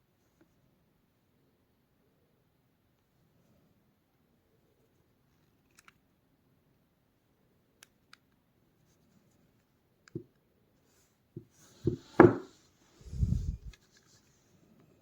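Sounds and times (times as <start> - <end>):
knocks of object handled: 11.4 - 12.5
low rubbing rumble: 13.0 - 13.7.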